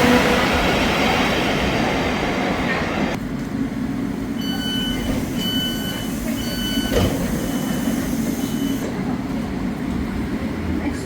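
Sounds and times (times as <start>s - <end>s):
train rumble: 0.0s - 11.0s
door-closing warning beeps: 4.4s - 8.9s.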